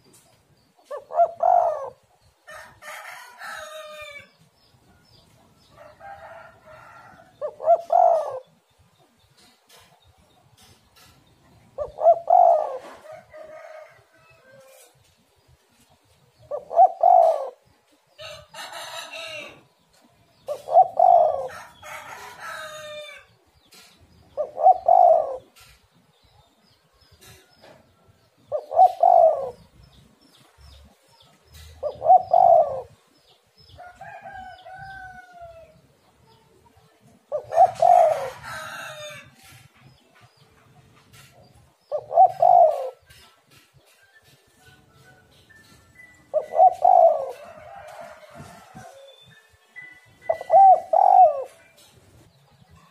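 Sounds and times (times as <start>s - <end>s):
other birds calling faintly: 0.0s - 52.9s
dove cooing: 0.8s - 2.1s, 7.0s - 8.6s, 11.8s - 13.3s, 16.5s - 17.7s, 20.4s - 23.2s, 24.4s - 25.8s, 28.5s - 29.8s, 31.5s - 33.0s, 37.3s - 39.2s, 41.9s - 43.3s, 45.6s - 49.2s, 50.2s - 51.9s.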